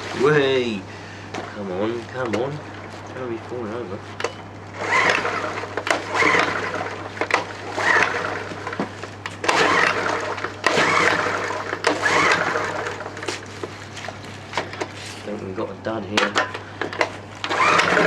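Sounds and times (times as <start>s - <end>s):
generator recoil starter pulled: 4.2s - 13.5s, 16.2s - 18.0s
engine spinning without firing: 4.7s - 13.3s, 16.9s - 18.0s.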